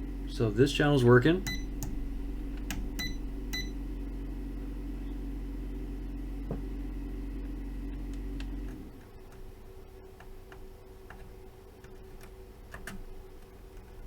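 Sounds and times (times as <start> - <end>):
low test tone hum: 0.0 - 8.8.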